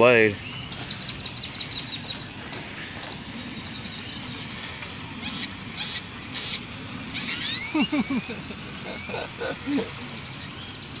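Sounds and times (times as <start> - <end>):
birds chirping: 0.0 - 11.0.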